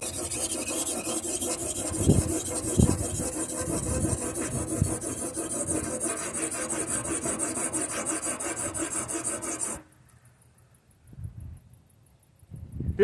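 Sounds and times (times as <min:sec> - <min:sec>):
sharpening stone scraping a blade: 0:00.0 - 0:09.9.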